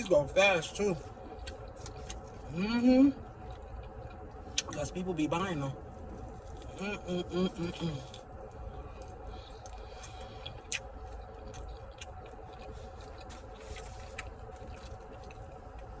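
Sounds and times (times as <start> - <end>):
steady low hum: 0.0 - 16.0
person chewing fried chicken: 1.0 - 2.5, 3.2 - 5.0, 5.8 - 6.8, 8.0 - 16.0.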